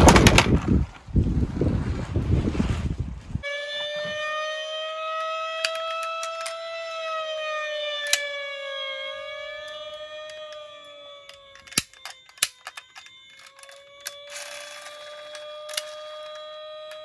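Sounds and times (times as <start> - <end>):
toy siren wailing: 3.4 - 17.0
sharp clicks: 5.6 - 7.0, 11.2 - 17.0.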